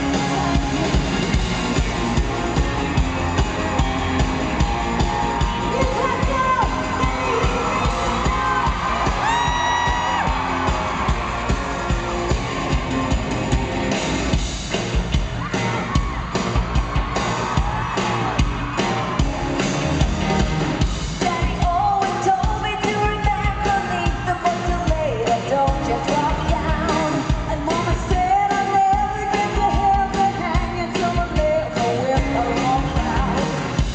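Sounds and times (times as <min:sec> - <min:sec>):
driving drum beat: 0:00.0 - 0:33.9
live pop-rock band: 0:00.0 - 0:33.9
woman singing lead vocals: 0:21.2 - 0:33.9.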